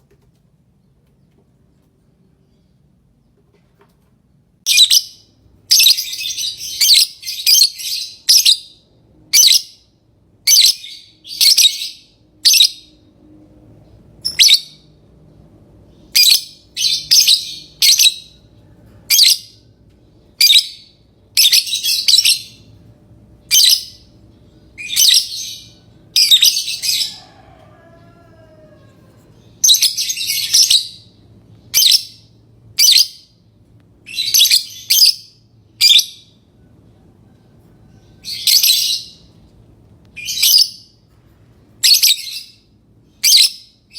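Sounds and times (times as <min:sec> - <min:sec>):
bird chirping: 0:04.7 - 0:13.1, 0:13.8 - 0:15.0, 0:15.8 - 0:33.4, 0:34.0 - 0:36.6, 0:37.9 - 0:39.5, 0:40.1 - 0:41.0, 0:41.7 - 0:43.9.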